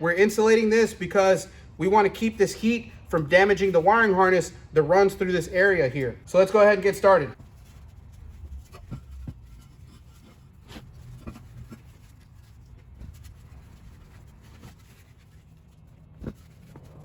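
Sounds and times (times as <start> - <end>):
scratchy rubbing of heat wrap: 7.3 - 17.0.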